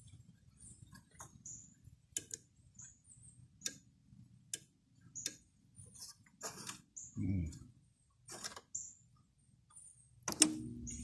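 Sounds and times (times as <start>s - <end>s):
air conditioner control clicks: 2.1s - 2.5s, 10.2s - 11.0s.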